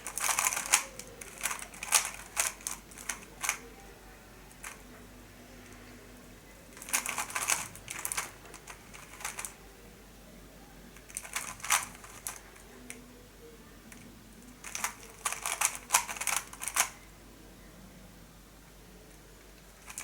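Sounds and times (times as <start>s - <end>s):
puzzle cube plastic clicks: 0.0s - 3.6s, 6.8s - 9.6s, 11.0s - 13.0s, 13.9s - 17.0s, 19.8s - 20.0s.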